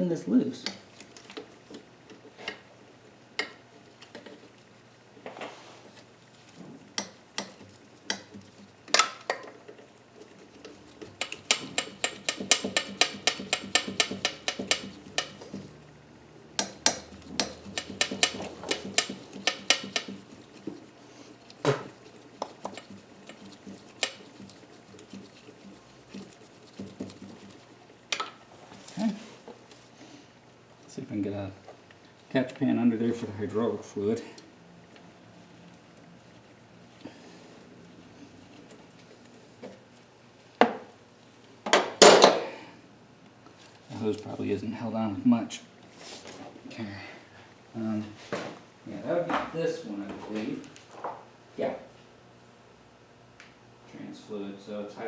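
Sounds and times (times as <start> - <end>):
ratchet wrench clicking: 11.2 - 15.7, 16.6 - 20.3, 22.7 - 24.3.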